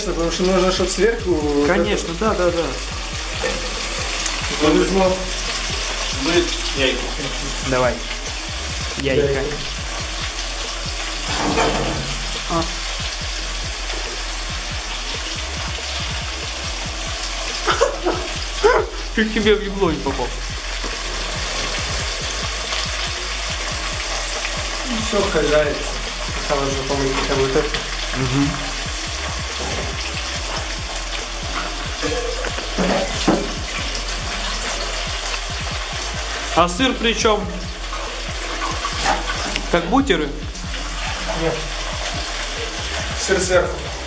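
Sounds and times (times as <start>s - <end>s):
voices: 0.0s - 9.9s, 11.4s - 12.8s
potatoes sizzling in oil: 0.0s - 44.0s.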